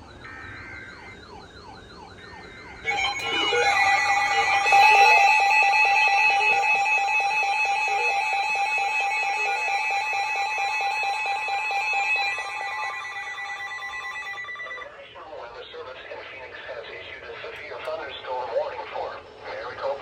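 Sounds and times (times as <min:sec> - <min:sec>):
electronic alarm tones: 0:00.0 - 0:14.9
fast pulsing beep: 0:00.3 - 0:14.8.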